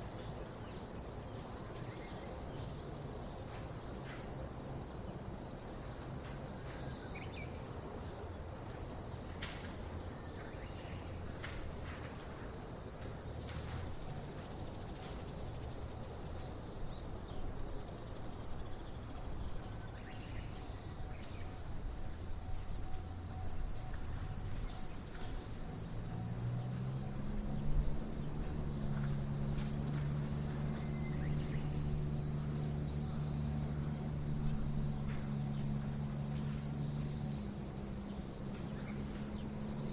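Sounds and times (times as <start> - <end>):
crickets trilling: 0.0 - 39.9.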